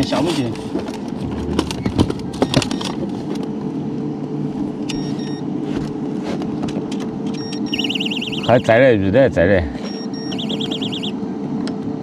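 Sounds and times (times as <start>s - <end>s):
short high electronic beeps: 4.9s - 5.4s, 7.4s - 8.7s, 9.8s - 11.1s.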